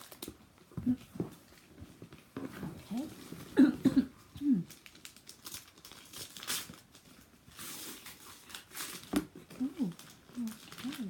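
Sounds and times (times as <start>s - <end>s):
wrapping paper crinkling and tearing: 0.0s - 0.4s, 4.6s - 11.0s.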